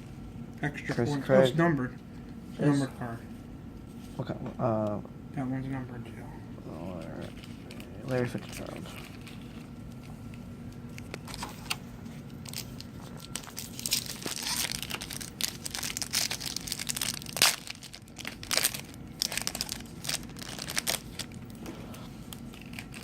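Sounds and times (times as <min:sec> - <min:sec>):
foil wrapper crinkling and tearing: 0:07.0 - 0:10.1, 0:11.0 - 0:21.6, 0:22.3 - 0:23.0.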